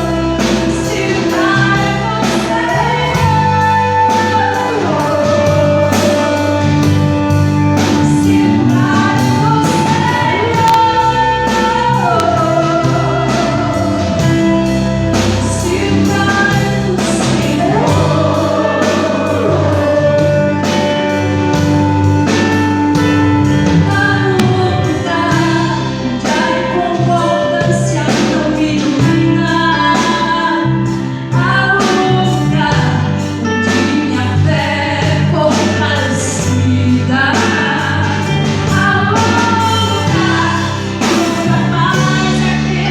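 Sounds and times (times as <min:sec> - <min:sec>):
backing voices: 0:00.0 - 0:21.8
bass line: 0:00.0 - 0:42.9
drums steady beat: 0:00.0 - 0:42.9
lead singer: 0:00.0 - 0:42.9.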